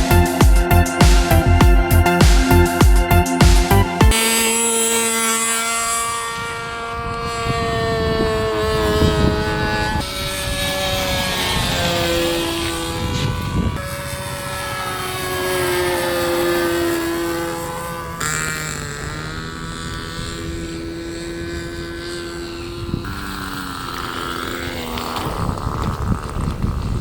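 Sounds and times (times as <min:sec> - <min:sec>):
model airplane engine: 0:00.0 - 0:27.0
wind noise: 0:05.4 - 0:17.6, 0:19.6 - 0:27.0.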